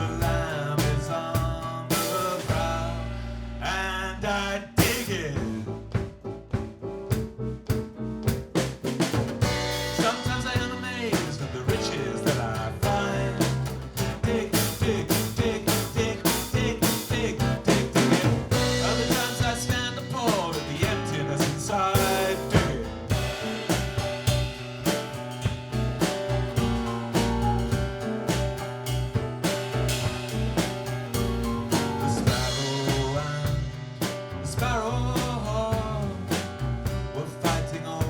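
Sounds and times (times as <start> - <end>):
drum kit beat: 0.0 - 3.8, 4.8 - 38.0
live band playing: 8.3 - 34.8.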